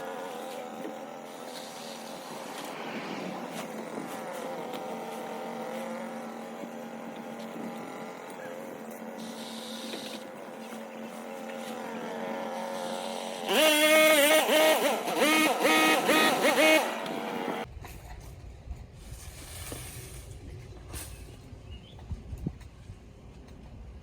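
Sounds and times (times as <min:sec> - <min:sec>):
pole saw engine revving: 0:00.0 - 0:17.7.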